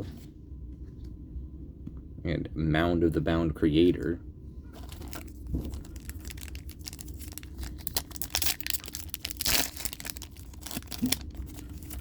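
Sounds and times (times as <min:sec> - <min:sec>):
foil wrapper crinkling: 0:04.8 - 0:12.0
foil wrapper tearing: 0:04.8 - 0:12.0.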